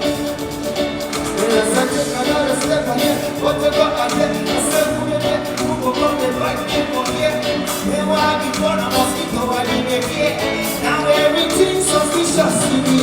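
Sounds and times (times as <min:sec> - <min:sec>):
live band music: 0:00.0 - 0:13.0
person singing: 0:00.0 - 0:13.0.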